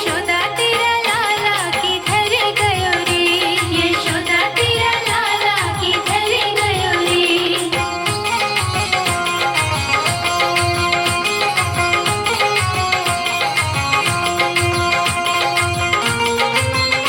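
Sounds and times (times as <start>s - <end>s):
steady drum beat: 0.0s - 17.0s
instrumental melody: 5.8s - 17.0s.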